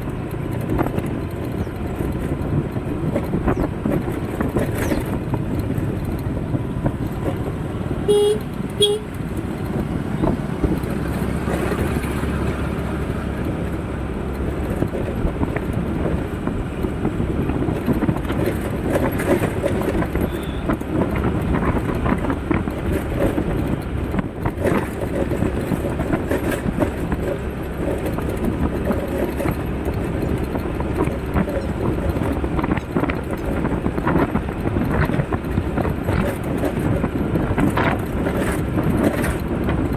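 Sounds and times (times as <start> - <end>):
road traffic noise: 0.0 - 39.9
short horn toots: 8.1 - 9.2, 20.2 - 20.7.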